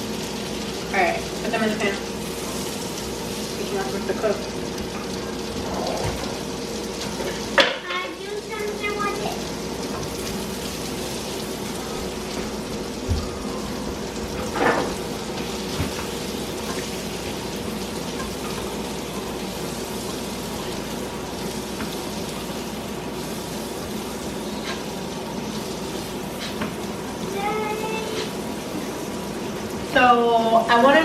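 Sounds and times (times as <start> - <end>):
green beans sizzling in a pan: 0.0 - 31.0.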